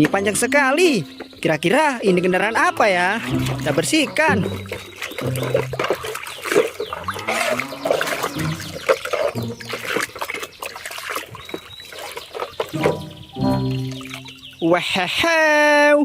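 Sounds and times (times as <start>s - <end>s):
water running and splashing: 1.2s - 15.4s
wet scrubbing: 2.6s - 15.1s.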